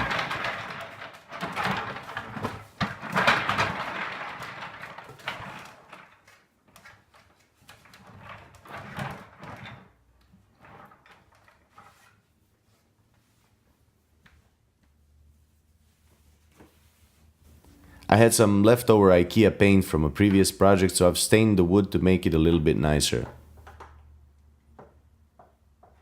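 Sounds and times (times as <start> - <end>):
cart rattling and knocking: 0.0 - 6.3
wooden cart rolling on casters: 0.0 - 12.2.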